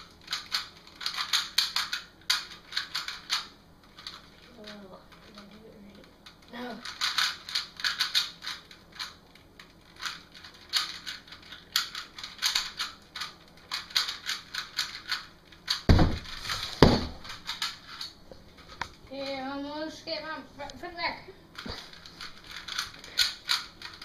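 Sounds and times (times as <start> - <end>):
plastic puzzle cube clicking: 0.2 - 3.4, 6.3 - 15.9, 22.3 - 24.0
heavy thumps: 15.9 - 17.5.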